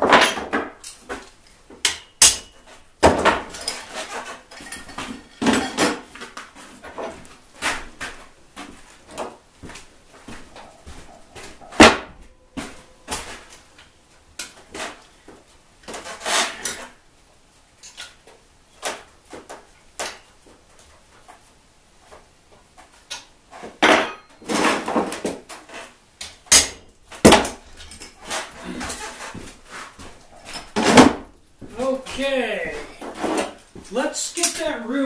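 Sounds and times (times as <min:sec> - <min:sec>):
metal parts clinking and knocking: 0:03.2 - 0:06.0.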